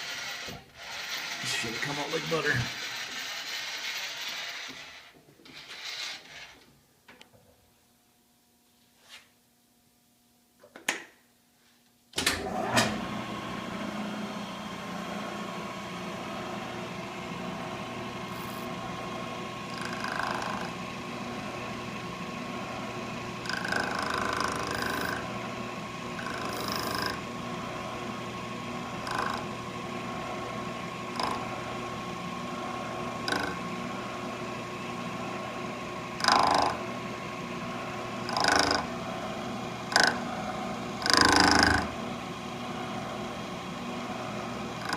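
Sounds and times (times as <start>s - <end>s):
milling machine humming: 0.0s - 5.0s, 12.2s - 44.9s
cutter scraping metal: 0.0s - 6.6s, 19.7s - 20.8s, 23.4s - 25.3s, 26.2s - 27.2s, 29.0s - 29.5s, 31.1s - 31.5s, 33.2s - 33.6s, 36.2s - 36.8s, 38.2s - 38.9s, 39.9s - 40.3s, 41.0s - 41.9s.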